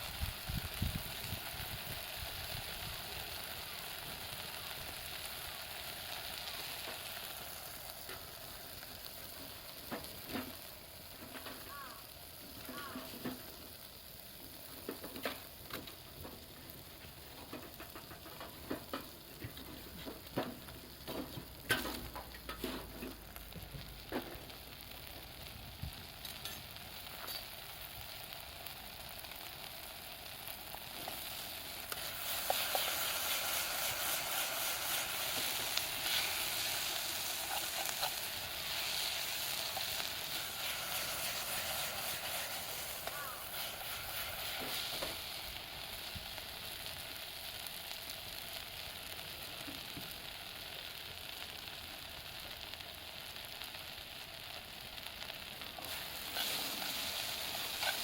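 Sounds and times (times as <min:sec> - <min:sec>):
food sizzling in a pan: 0:00.0 - 0:58.0
utensil clicks and scrapes: 0:31.0 - 0:45.2, 0:55.8 - 0:58.0.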